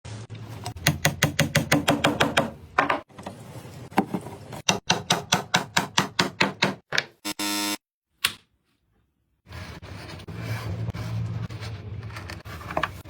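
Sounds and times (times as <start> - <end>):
hammering on wood: 0.8 - 2.6, 4.7 - 6.9.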